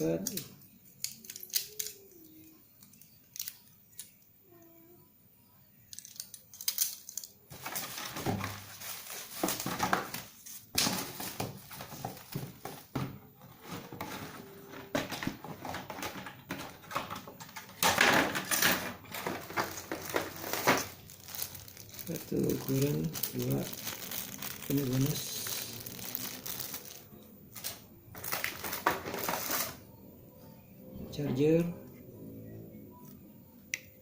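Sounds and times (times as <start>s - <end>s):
small clicks of handled parts: 0.2s - 4.2s, 5.9s - 7.4s
plastic packaging crinkling: 6.0s - 13.0s, 13.6s - 29.8s.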